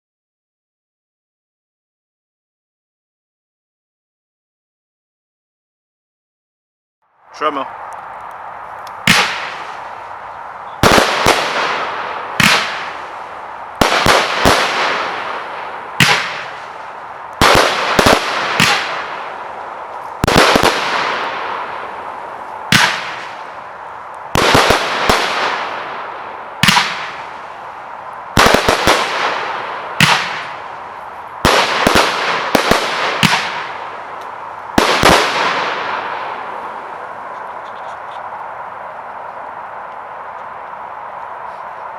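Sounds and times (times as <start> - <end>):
firework bangs with hiss: 9.0 - 10.0, 10.8 - 37.3.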